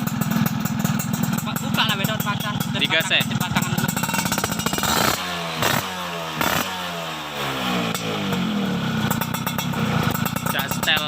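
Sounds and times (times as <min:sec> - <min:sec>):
two-stroke engine revving: 0:00.0 - 0:11.0.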